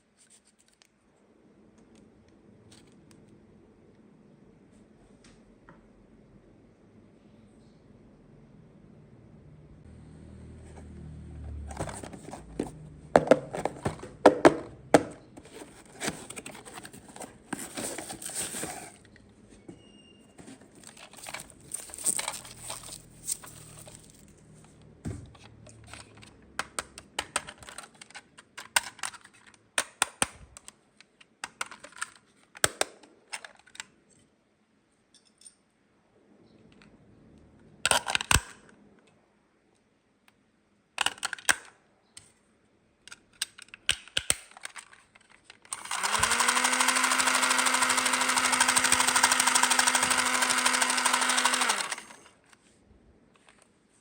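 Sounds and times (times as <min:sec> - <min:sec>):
packaging crinkling and tearing: 0:15.5 - 0:19.0, 0:20.7 - 0:24.3
rustling bursts: 0:20.7 - 0:24.3
plastic pieces clicking: 0:20.8 - 0:24.3.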